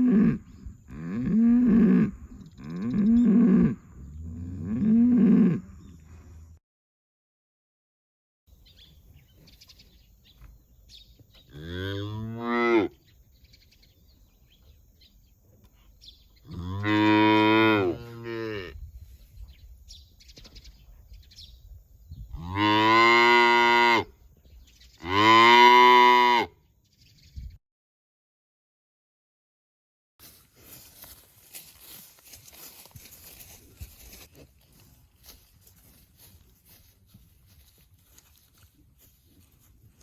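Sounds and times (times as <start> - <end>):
cows mooing: 11.5 - 13.0, 16.5 - 18.8, 22.4 - 24.1, 25.1 - 26.5.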